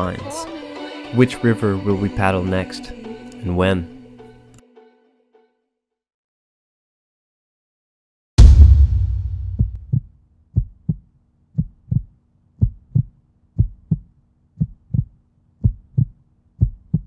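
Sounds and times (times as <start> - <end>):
deep boom: 8.4 - 10.1
heartbeat thumps: 8.4 - 17.0.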